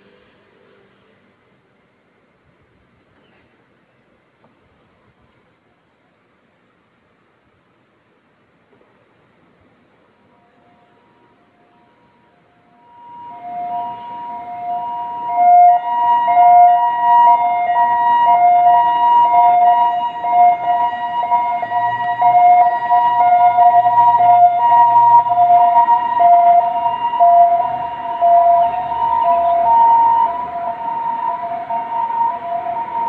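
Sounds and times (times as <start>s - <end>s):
ambulance siren two-tone: 10.2s - 33.0s.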